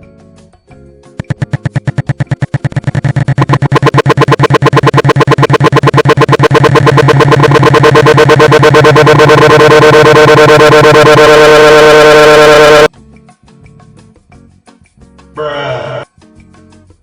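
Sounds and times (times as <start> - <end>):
stuttered distorted voice sample: 1.2 - 12.9, 15.4 - 16.0.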